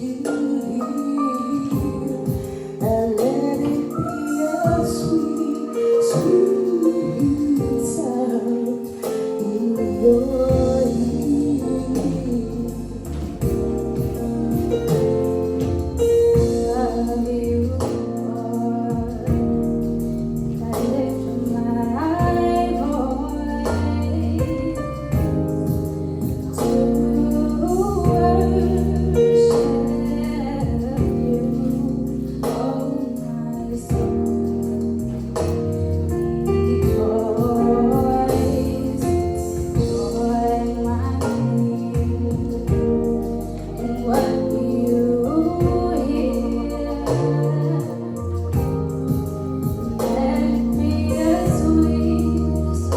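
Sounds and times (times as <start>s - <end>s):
live band accompaniment: 0.0s - 52.9s
drum hits: 10.4s - 12.4s, 13.0s - 16.9s, 23.7s - 26.9s, 33.8s - 36.0s, 36.8s - 44.6s, 48.5s - 50.4s
choir singing gospel: 25.8s - 52.9s.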